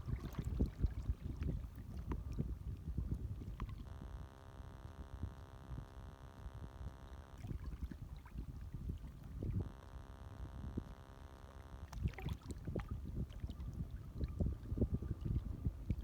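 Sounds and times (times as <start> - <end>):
small water splashes: 0.0 - 3.8, 7.4 - 9.4, 11.8 - 14.5
wind on microphone: 0.0 - 16.0.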